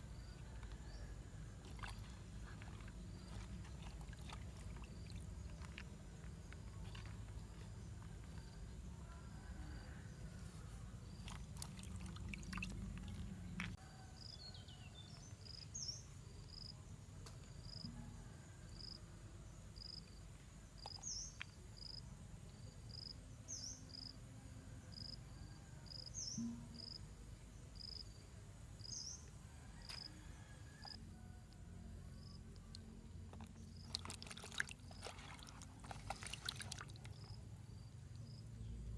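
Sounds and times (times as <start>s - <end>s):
low background hum: 0.0s - 14.3s.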